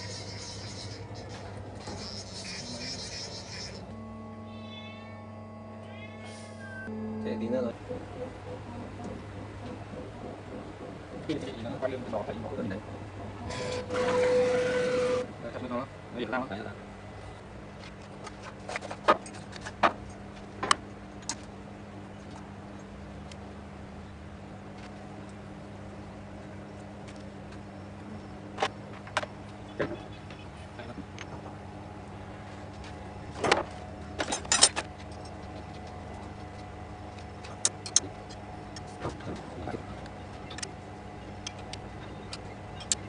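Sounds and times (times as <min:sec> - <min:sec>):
machine hum: 0:00.0 - 0:18.2
low machine hum: 0:00.0 - 0:18.7, 0:19.4 - 0:43.0.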